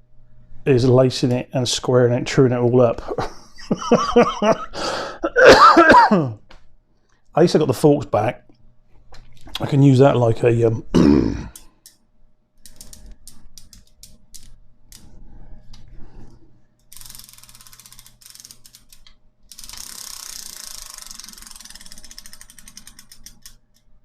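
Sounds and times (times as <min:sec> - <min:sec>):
bicycle freewheel ratcheting: 0:12.6 - 0:15.0, 0:16.8 - 0:23.8.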